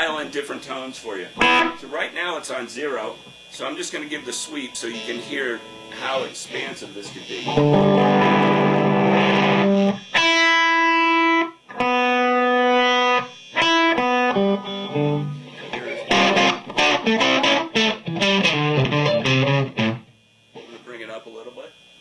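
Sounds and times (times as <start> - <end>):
electric guitar notes: 1.3 - 2.0, 3.4 - 20.2.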